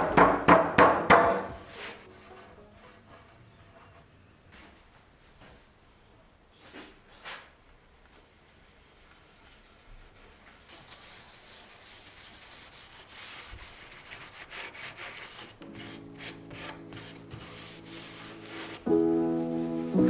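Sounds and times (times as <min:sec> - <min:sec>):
quiet background music: 0:00.0 - 0:05.8, 0:14.7 - 0:20.0
hand rubbing wood: 0:08.3 - 0:20.0.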